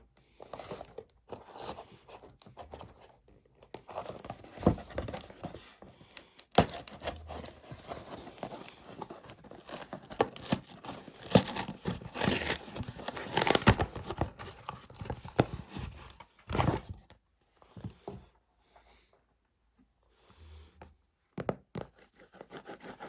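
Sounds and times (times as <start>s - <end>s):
wrapping crinkling and tearing: 6.6s - 14.1s.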